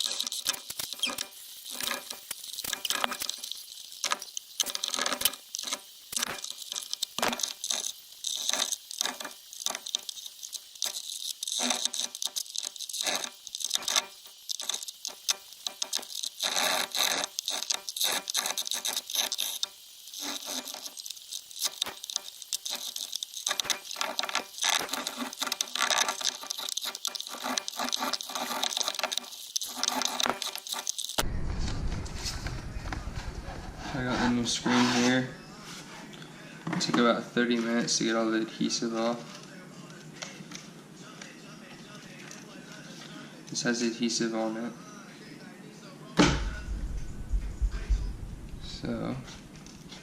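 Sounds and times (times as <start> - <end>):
rag scrubbing and scraping: 22.6 - 30.9, 33.3 - 36.1.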